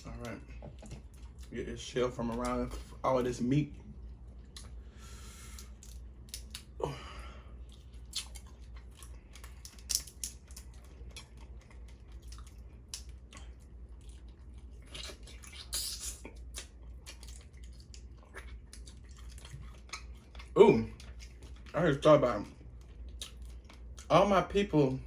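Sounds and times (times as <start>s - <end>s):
close-up chewing: 0.1s - 3.0s, 7.4s - 24.2s
crab shell cracking: 5.5s - 6.8s, 9.2s - 11.4s.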